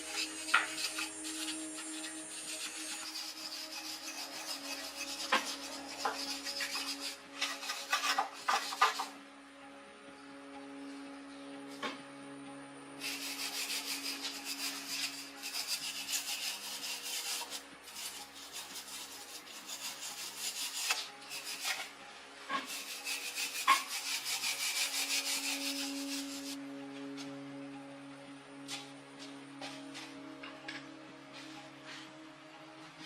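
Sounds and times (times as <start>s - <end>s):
fast rasping filing strokes: 0.0s - 9.1s, 13.0s - 21.9s, 22.6s - 26.6s
background music: 0.0s - 33.0s.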